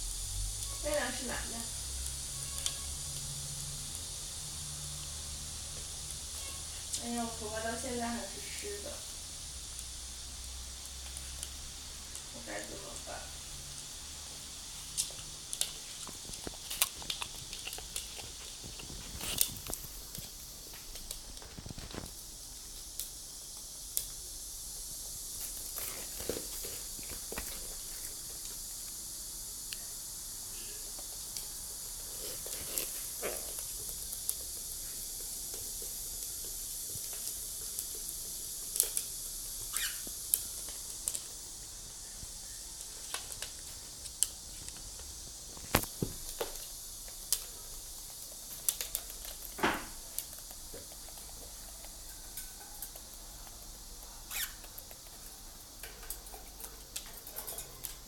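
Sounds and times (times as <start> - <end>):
steady high hiss: 0.0 - 58.0
short squeaks: 39.7 - 40.0, 54.3 - 54.6.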